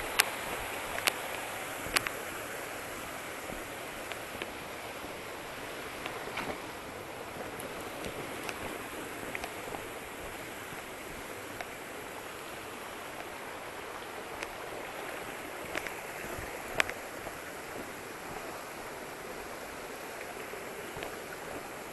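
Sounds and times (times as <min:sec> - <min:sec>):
light clicks: 0:00.0 - 0:02.3
waterfall rushing: 0:00.0 - 0:21.9.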